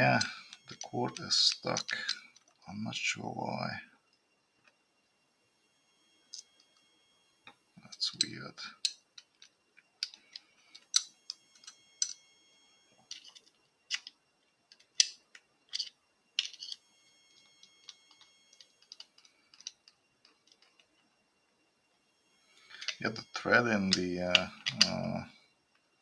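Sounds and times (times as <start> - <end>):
padlock metallic clicks: 10.8 - 12.2, 22.7 - 25.2.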